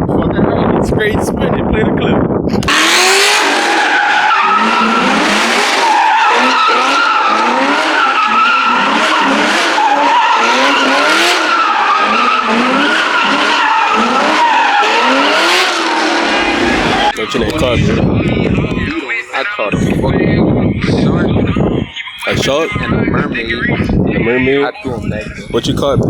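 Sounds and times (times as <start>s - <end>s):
car engine revving: 2.5s - 20.1s
tyre squeal: 3.4s - 17.2s.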